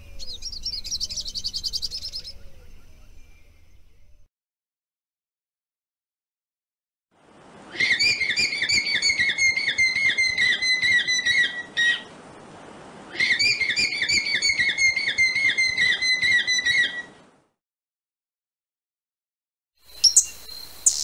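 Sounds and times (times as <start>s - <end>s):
animal's high whistled call: 7.7s - 12.1s, 13.1s - 17.1s.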